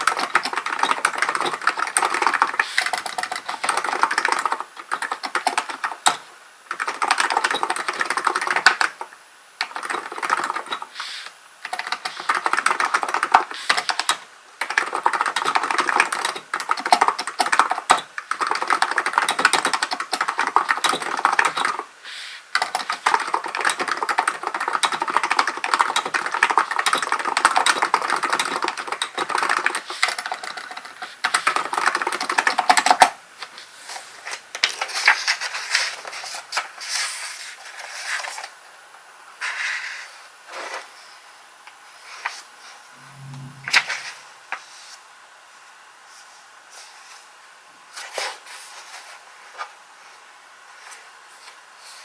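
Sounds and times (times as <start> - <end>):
fast keyboard typing: 0.0 - 11.0, 11.6 - 21.9, 22.6 - 33.2.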